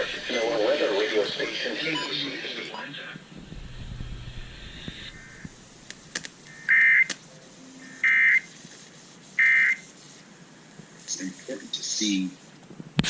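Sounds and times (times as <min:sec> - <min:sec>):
buzzy data tone bursts: 0:03.2 - 0:08.6.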